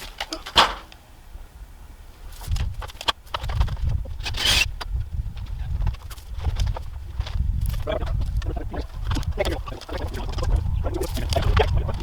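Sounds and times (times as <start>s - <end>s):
wind buffeting microphone: 1.6s - 12.0s
rustling scrape: 2.3s - 4.8s.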